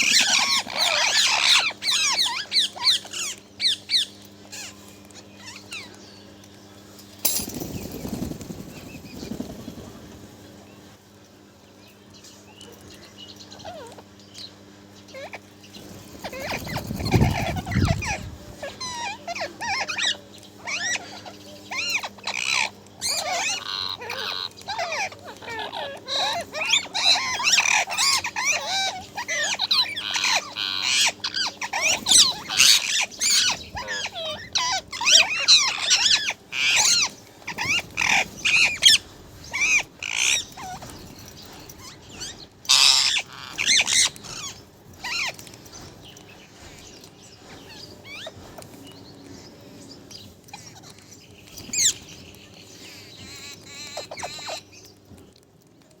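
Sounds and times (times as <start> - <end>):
parrot chattering and squawking: 0.0 - 4.8, 15.1 - 15.5, 16.1 - 45.5, 47.6 - 48.5, 53.3 - 54.7.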